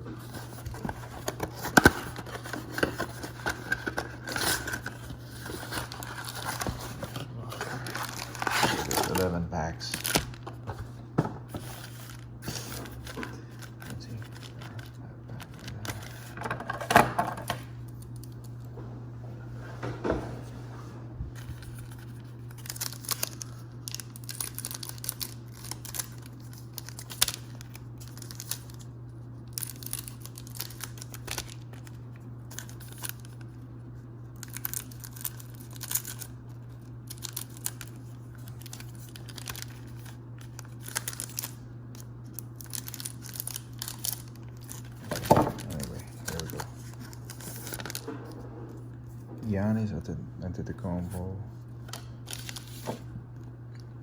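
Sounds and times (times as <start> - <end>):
cards rustling: 0.0 - 18.4, 21.4 - 28.9, 34.4 - 49.6, 50.8 - 53.5
steady low hum: 0.0 - 54.0
wrappers tearing and crinkling: 0.3 - 10.6, 21.7 - 33.5, 34.4 - 41.6, 42.3 - 48.1.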